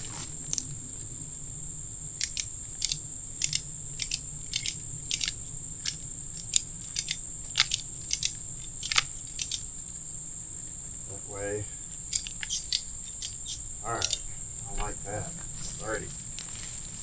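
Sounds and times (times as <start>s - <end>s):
insect drone: 0.0s - 17.0s
ratchet strap clicking: 0.4s - 0.8s, 2.2s - 9.8s, 12.0s - 14.3s.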